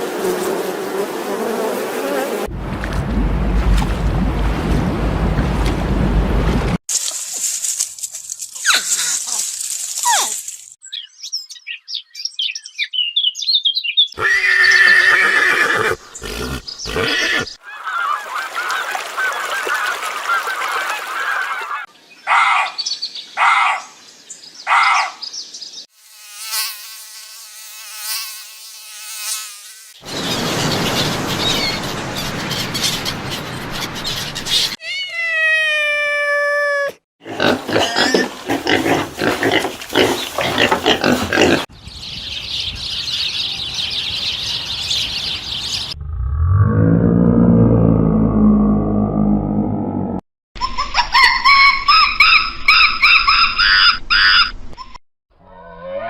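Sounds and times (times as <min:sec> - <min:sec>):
drawn-out falling animal call: 0:14.2 - 0:22.4, 0:30.0 - 0:41.7, 0:55.4 - 0:56.0.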